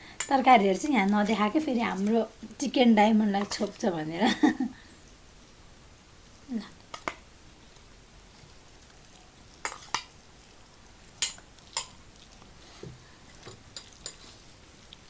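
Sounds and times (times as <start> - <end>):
dishes and cutlery clinking: 13.4 - 14.4.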